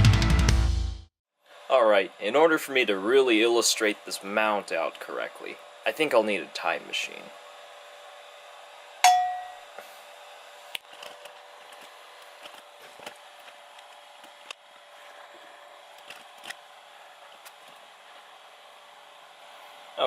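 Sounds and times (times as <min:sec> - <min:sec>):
cowbell struck: 0:09.0 - 0:09.6.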